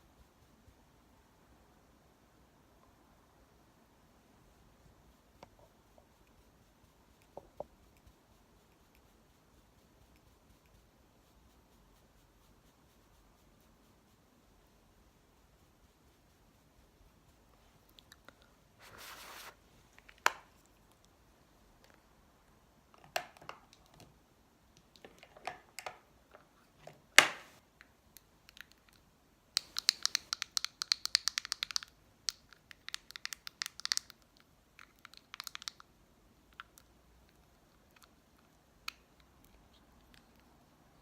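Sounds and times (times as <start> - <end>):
clicks and taps of makeup items: 24.8 - 27.9.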